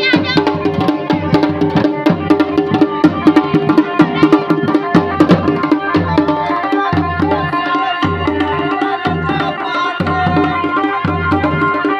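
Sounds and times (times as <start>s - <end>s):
drums playing a rhythm: 0.0s - 11.9s
held melody line: 0.0s - 11.9s.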